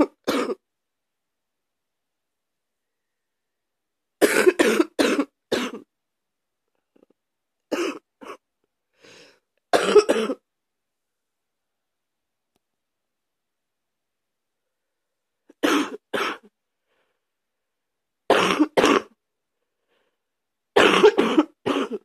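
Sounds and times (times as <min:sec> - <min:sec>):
person coughing: 0:00.0 - 0:00.6, 0:04.2 - 0:05.9, 0:07.7 - 0:08.4, 0:09.7 - 0:10.4, 0:15.6 - 0:16.5, 0:18.3 - 0:19.1, 0:20.8 - 0:22.0.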